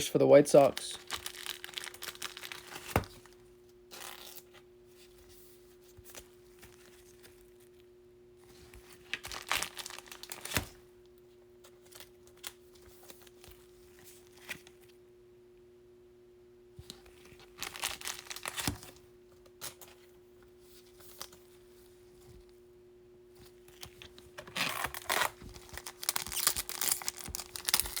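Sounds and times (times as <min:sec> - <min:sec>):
faint steady hum: 0:00.0 - 0:28.0
plastic card sleeves crinkling: 0:00.3 - 0:05.3, 0:08.5 - 0:10.8, 0:16.9 - 0:20.0, 0:23.4 - 0:28.0
cards rustling and clicking: 0:23.6 - 0:28.0.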